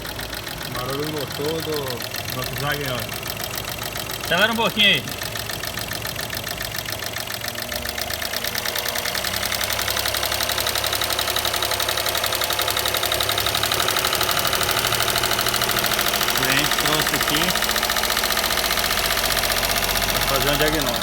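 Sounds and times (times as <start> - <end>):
car engine ticking: 0.0 - 21.0.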